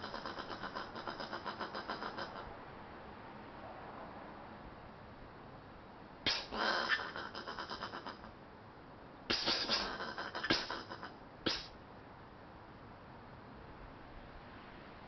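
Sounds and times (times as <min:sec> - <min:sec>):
possum harsh raspy calls: 0:00.0 - 0:02.5, 0:06.2 - 0:08.4, 0:09.3 - 0:11.8.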